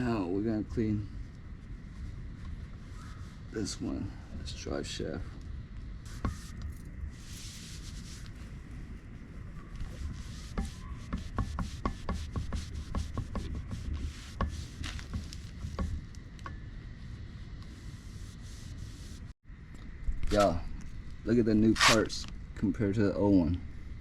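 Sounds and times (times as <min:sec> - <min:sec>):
rag rubbing on metal shaft: 0:06.1 - 0:08.7, 0:09.4 - 0:16.1.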